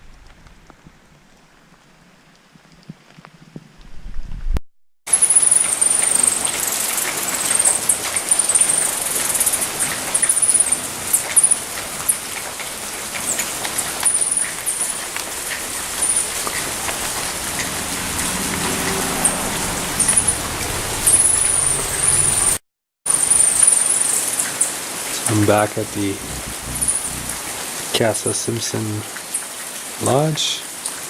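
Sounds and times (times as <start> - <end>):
rain hissing: 5.1 - 21.1, 23.2 - 31.0.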